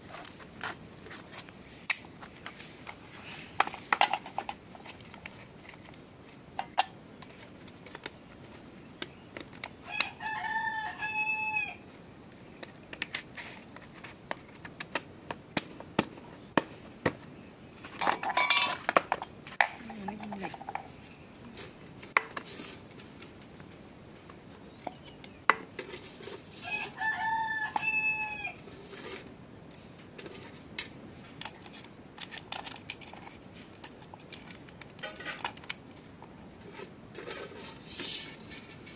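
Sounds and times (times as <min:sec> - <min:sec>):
rooster crowing: 0:09.8 - 0:11.8, 0:26.6 - 0:28.6
pots and utensils clattering: 0:18.0 - 0:20.9, 0:35.0 - 0:35.7.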